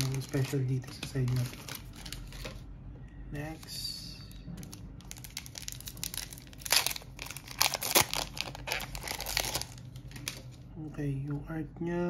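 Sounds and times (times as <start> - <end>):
plastic wrapper tearing and crumpling: 0.0 - 2.6, 4.6 - 10.6.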